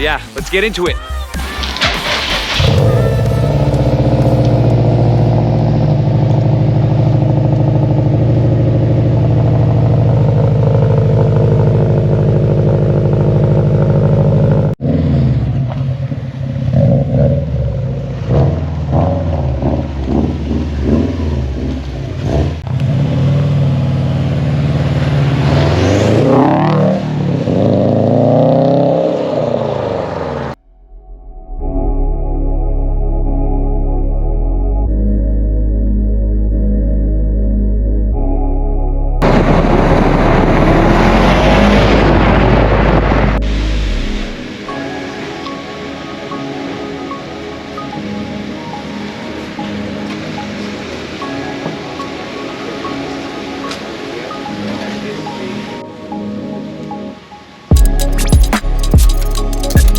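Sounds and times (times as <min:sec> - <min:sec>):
car engine revving: 0:00.0 - 0:30.6, 0:39.2 - 0:44.8, 0:57.7 - 0:59.9.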